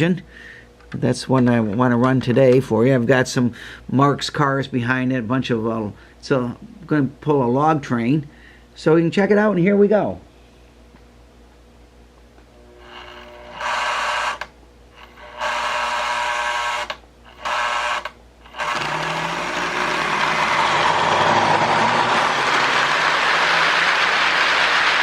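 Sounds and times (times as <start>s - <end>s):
toy locomotive electric motor buzzing: 12.6s - 25.0s.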